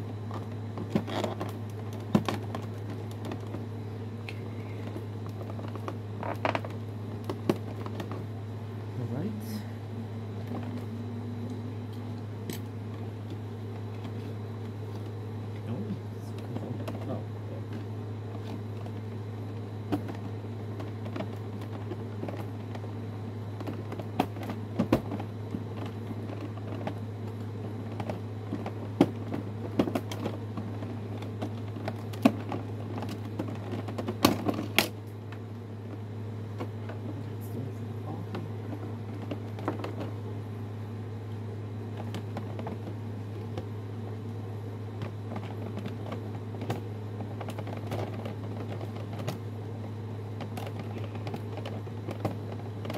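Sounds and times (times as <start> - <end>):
steady low hum: 0.0 - 52.9
toy packaging clicks and knocks: 27.8 - 35.4.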